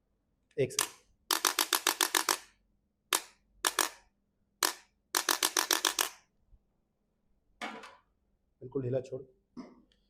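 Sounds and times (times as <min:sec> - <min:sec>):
sharp mechanical clicks: 0:00.7 - 0:06.2.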